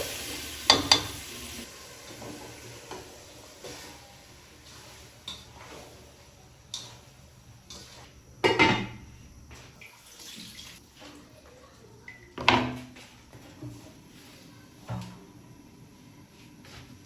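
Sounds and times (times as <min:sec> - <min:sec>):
pots clattering: 0:00.0 - 0:04.1
dishes clinking: 0:00.7 - 0:01.2, 0:07.7 - 0:09.0.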